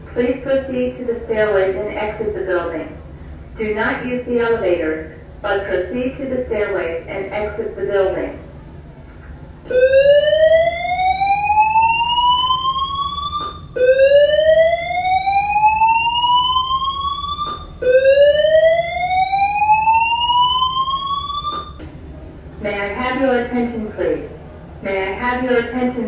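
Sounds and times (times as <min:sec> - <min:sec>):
fire alarm whoop tone: 0:09.7 - 0:21.8.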